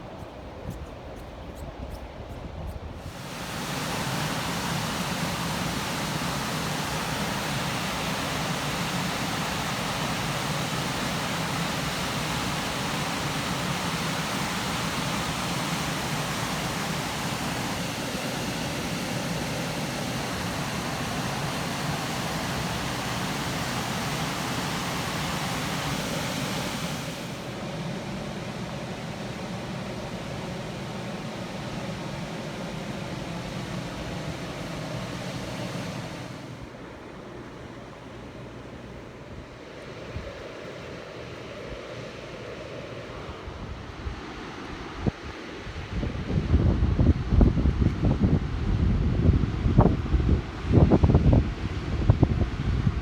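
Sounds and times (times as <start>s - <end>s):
water rushing from a dam: 3.0s - 36.9s.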